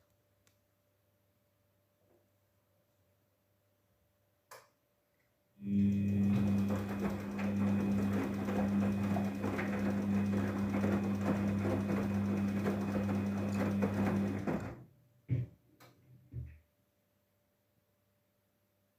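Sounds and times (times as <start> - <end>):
washing machine motor humming: 5.6 - 14.8.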